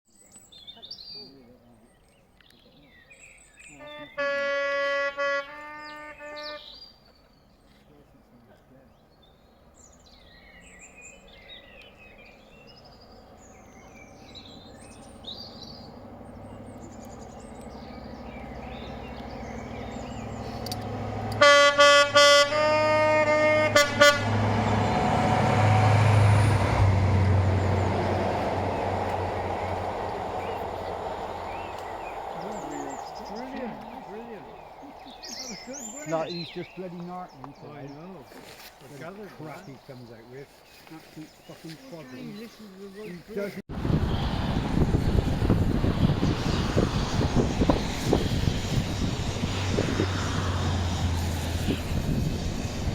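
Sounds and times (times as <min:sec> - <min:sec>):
birds chirping faintly: 0:00.1 - 0:21.5, 0:24.2 - 0:44.4
short train horn toots: 0:03.7 - 0:06.8, 0:20.7 - 0:27.4
train horn: 0:03.7 - 0:06.8, 0:20.7 - 0:34.6
train rumble: 0:09.6 - 0:37.4, 0:43.7 - 0:52.9.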